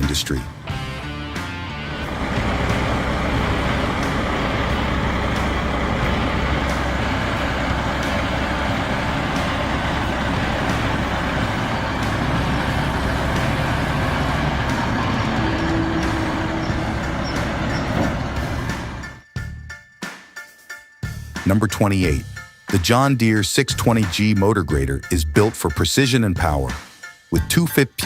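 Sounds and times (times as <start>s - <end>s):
truck diesel engine running: 0.0s - 19.6s.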